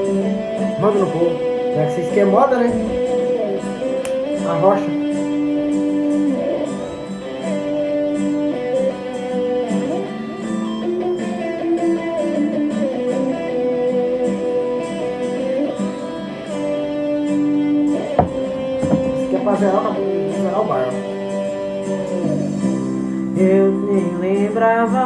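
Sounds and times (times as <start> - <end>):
plucked and strummed guitar: 0.0 - 25.0
steady beat: 18.2 - 19.5.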